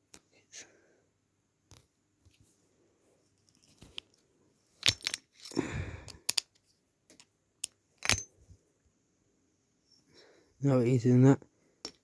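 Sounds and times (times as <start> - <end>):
metal parts and tools clinking: 4.8 - 8.4.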